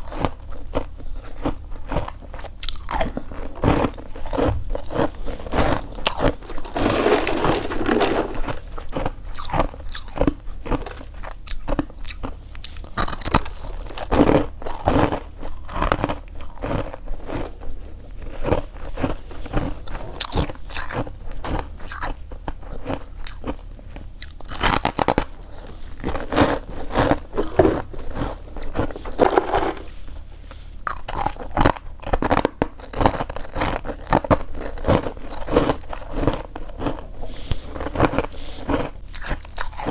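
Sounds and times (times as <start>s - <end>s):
frost crunching being chewed: 0.0s - 39.9s.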